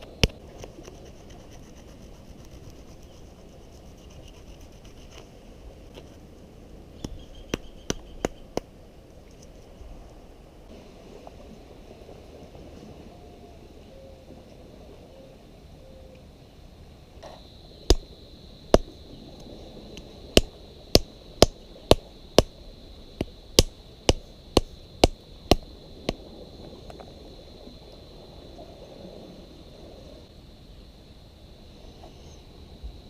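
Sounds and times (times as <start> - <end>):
sharp chopping strikes: 17.9 - 18.1, 23.2 - 25.6.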